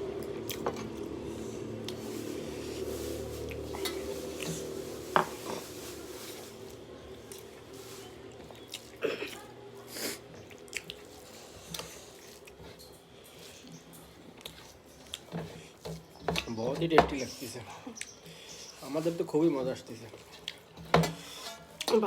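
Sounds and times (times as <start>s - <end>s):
person chewing food: 0.2s - 2.7s, 6.7s - 16.2s, 20.1s - 21.9s.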